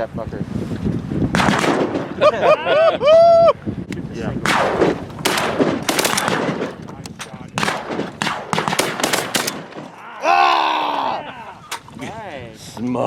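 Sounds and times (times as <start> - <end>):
shotguns firing: 1.3 - 2.2, 4.4 - 10.0.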